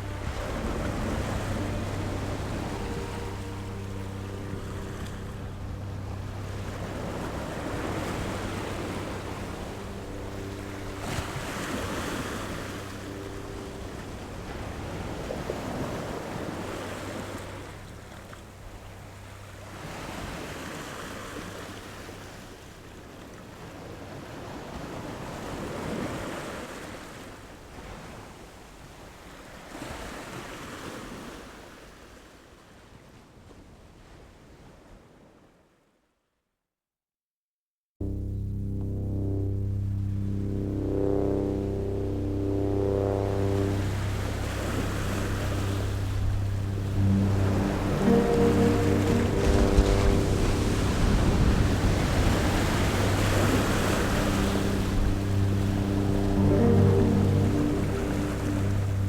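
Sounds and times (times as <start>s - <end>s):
ocean waves washing: 0.0s - 23.6s, 38.0s - 59.0s
low hum with held tones: 0.0s - 26.1s, 38.0s - 59.0s.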